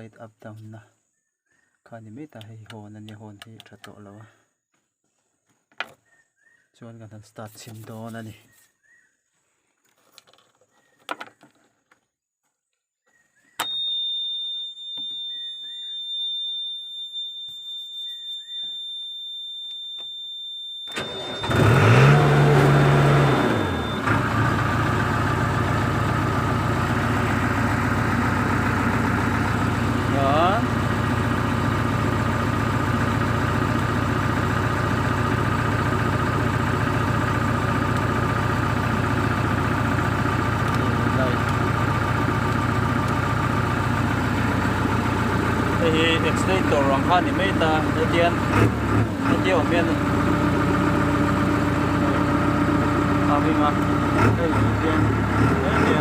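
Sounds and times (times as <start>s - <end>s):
ignition switch: 13.6s - 14.2s, 19.7s - 24.2s
high-pitched warning buzzer: 13.6s - 24.0s
diesel engine starting: 20.8s - 56.0s.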